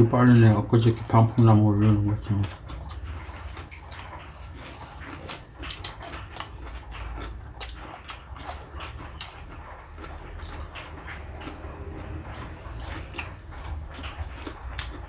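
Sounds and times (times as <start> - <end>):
chewing and mouth smacks: 0.0 - 15.0.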